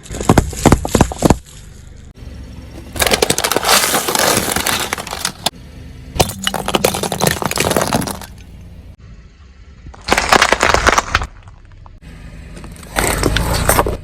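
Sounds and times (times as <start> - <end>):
objects crushed under car tyre: 0.0 - 1.8, 2.8 - 5.5, 6.2 - 8.5, 9.9 - 12.0.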